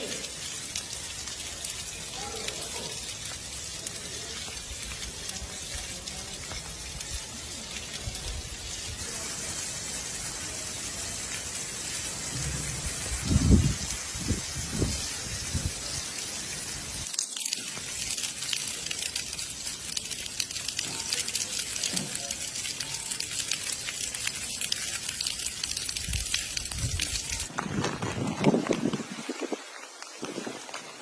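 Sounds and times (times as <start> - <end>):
light rain hissing: 0.0 - 31.0
water dripping: 0.0 - 31.0
low rumbling thumps: 12.3 - 14.4.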